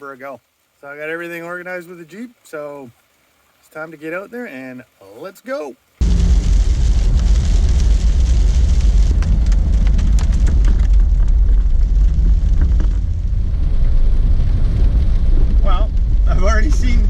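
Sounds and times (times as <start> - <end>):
car engine and road noise rumble: 6.0 - 17.0.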